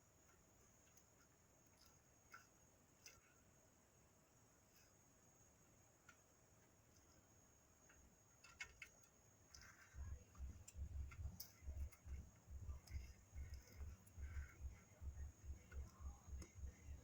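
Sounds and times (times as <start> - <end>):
faint clicks and taps: 0.2 - 3.6, 6.0 - 17.0
low thumping rumble: 10.0 - 17.0.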